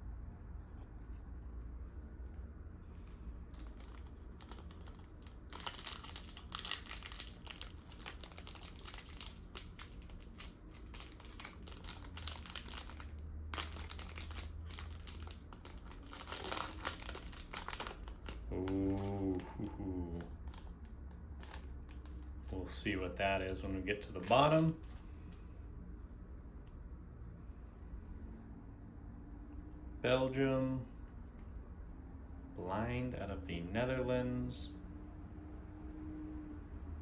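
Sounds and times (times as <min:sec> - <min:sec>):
low steady hum: 0:00.0 - 0:37.0
plastic wrapping crinkling: 0:03.0 - 0:22.6, 0:24.1 - 0:25.4.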